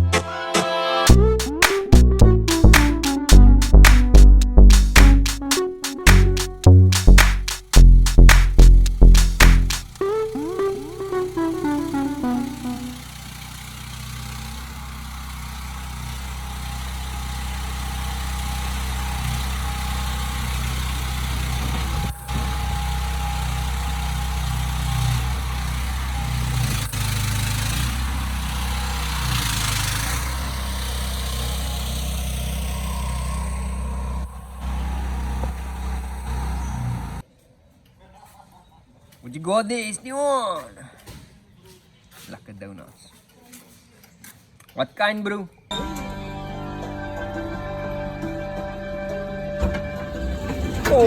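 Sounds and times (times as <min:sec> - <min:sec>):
engine humming: 0:01.1 - 0:37.2.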